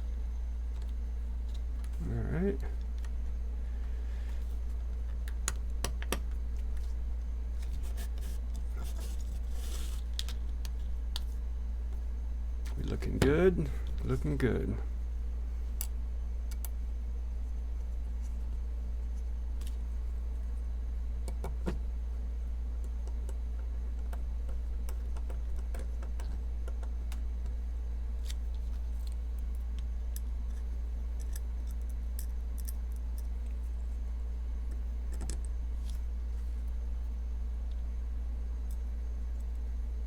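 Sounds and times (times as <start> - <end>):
low electrical hum: 0.0 - 40.0.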